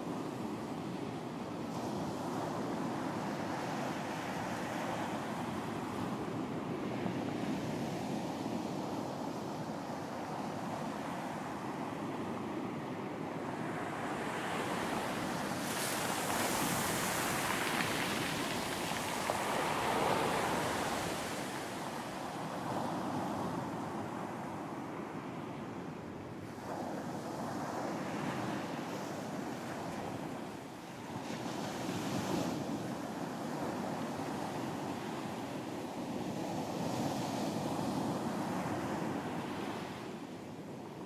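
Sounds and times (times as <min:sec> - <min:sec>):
sea waves breaking on beach: 0:13.6 - 0:23.8.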